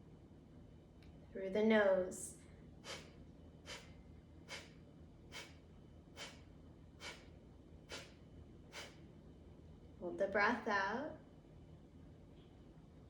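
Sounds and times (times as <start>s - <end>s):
person sniffing sharply through nose: 2.9s - 3.1s, 3.7s - 5.6s, 6.2s - 6.4s, 7.0s - 7.3s, 7.9s - 9.0s.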